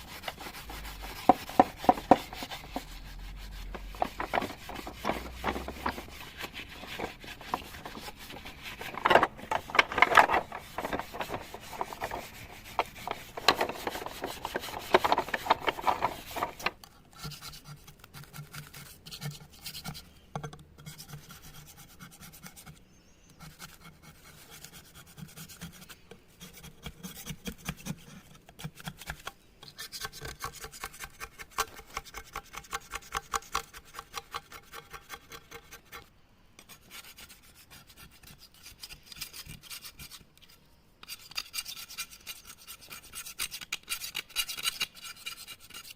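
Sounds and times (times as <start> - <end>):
hand rubbing and scraping strokes: 0.0 - 45.9.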